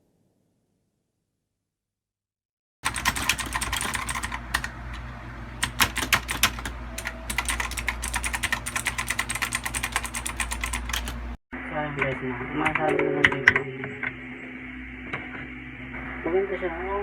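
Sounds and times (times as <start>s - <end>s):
mechanical keyboard typing: 2.8s - 11.2s.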